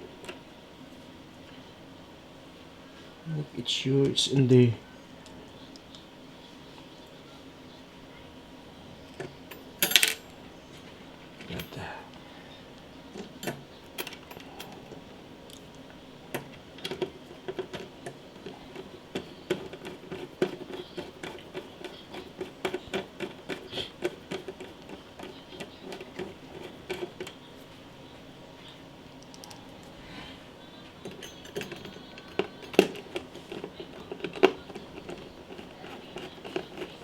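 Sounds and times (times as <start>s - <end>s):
computer parts clicking and clattering: 13.1s - 27.5s, 31.0s - 37.0s.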